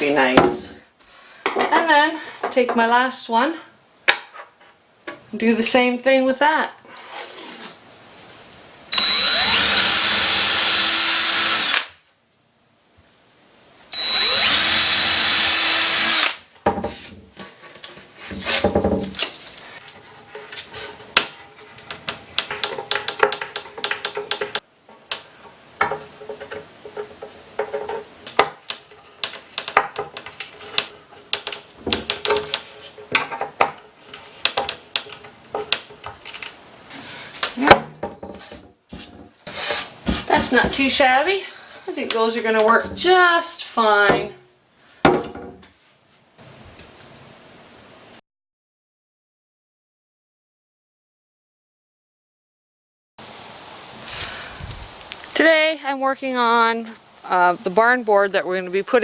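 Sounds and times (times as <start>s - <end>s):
power drill boring through wood: 8.9s - 11.9s, 14.0s - 16.4s
screwdriver turning screws: 9.0s - 11.9s, 14.2s - 16.4s.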